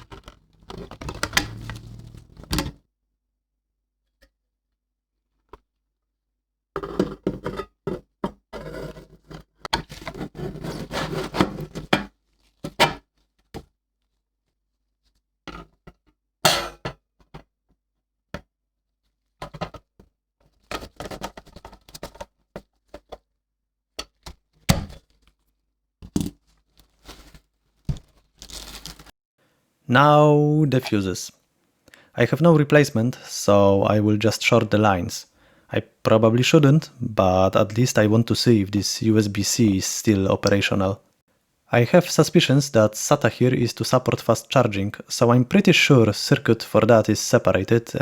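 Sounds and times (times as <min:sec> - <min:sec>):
handling knocks and clicks: 0:00.0 - 0:02.8.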